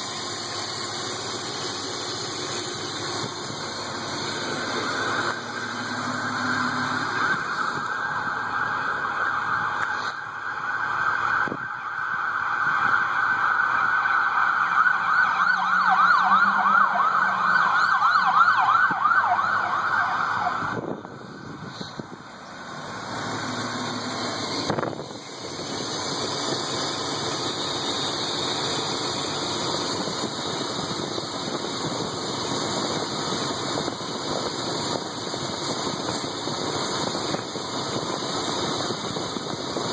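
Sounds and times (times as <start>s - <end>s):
car engine idling: 0.0s - 39.9s
loud whine sweeping in pitch: 2.5s - 31.3s.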